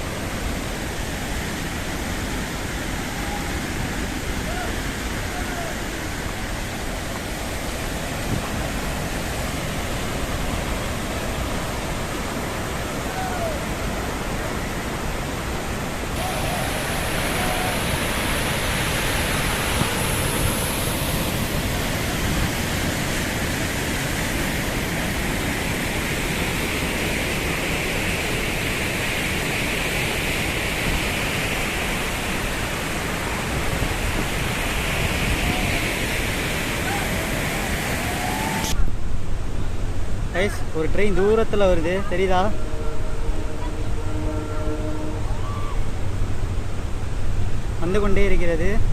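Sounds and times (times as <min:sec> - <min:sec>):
waterfall rushing: 0:00.0 - 0:38.8.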